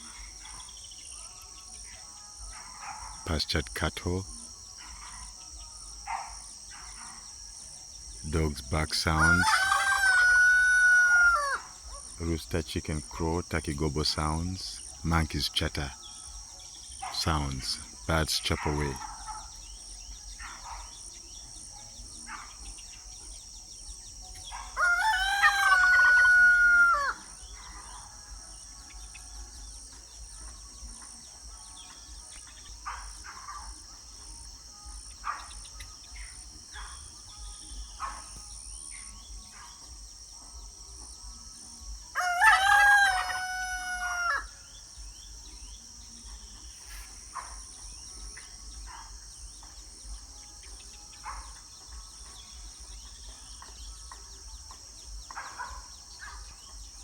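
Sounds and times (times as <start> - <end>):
high insect buzz: 0.0 - 57.0
rooster crowing: 9.0 - 12.1, 24.5 - 28.0, 42.1 - 44.7.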